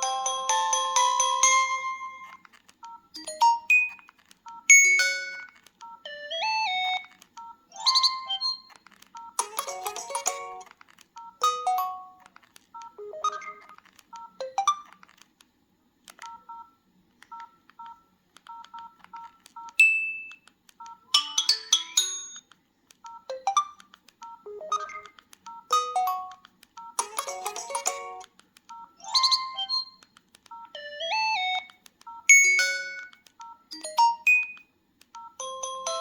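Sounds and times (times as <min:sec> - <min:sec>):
electronic ringtone melody: 0:00.0 - 0:02.3, 0:04.6 - 0:08.6, 0:09.2 - 0:10.6, 0:24.3 - 0:28.2, 0:30.6 - 0:34.6, 0:35.2 - 0:36.0.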